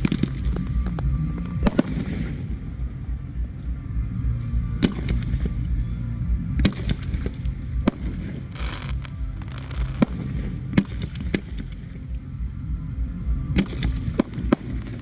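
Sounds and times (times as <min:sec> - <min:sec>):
fireworks sharp reports: 0:00.0 - 0:05.6, 0:07.9 - 0:11.7
steady low rumble: 0:00.0 - 0:15.0.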